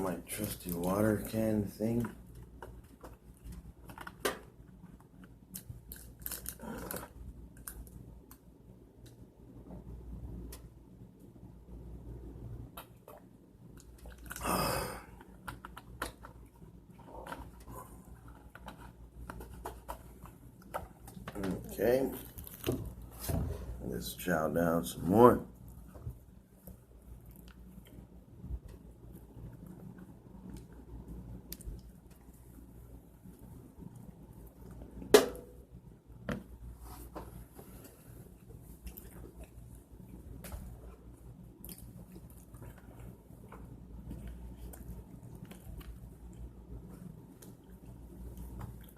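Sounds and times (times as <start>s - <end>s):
wet chewing clicks: 38.8s - 40.2s, 41.6s - 48.9s.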